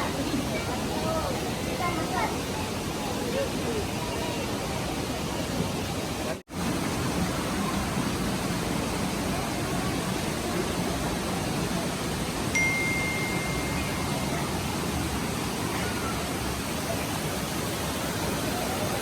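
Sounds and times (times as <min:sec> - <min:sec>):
steady rushing noise: 0:04.7 - 0:19.0
steady high tone: 0:12.5 - 0:16.2.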